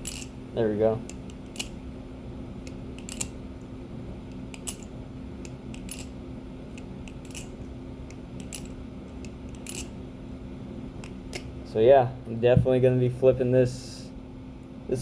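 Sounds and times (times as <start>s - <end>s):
butterfly knife metallic clicks: 0.0s - 0.3s, 1.0s - 1.8s, 2.6s - 3.4s, 4.3s - 6.1s, 6.7s - 9.9s.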